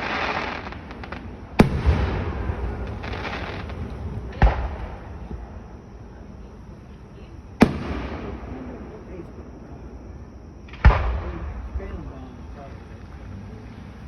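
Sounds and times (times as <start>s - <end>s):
fireworks bangs: 0.0s - 9.6s, 10.6s - 14.0s
faint crackles: 0.0s - 9.9s
echoing rumble: 0.7s - 6.4s.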